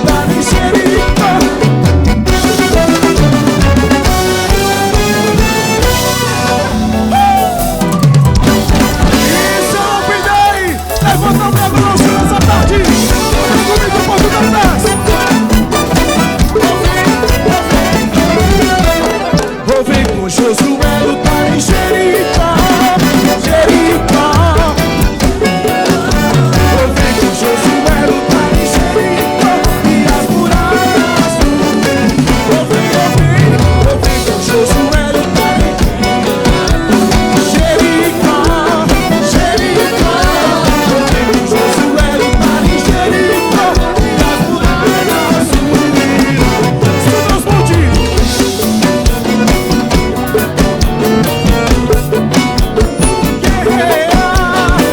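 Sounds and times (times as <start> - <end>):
band playing upbeat gospel song: 0.0 - 54.9
bass: 0.0 - 54.9
drum kit beat: 0.0 - 54.9
pitch-bending melody line: 0.0 - 54.9.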